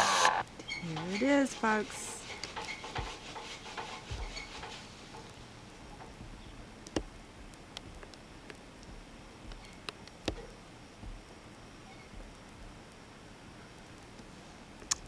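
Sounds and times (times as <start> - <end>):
faint hiss: 0.0 - 15.0
soft knocks: 0.8 - 5.3
light clicks: 13.8 - 15.0.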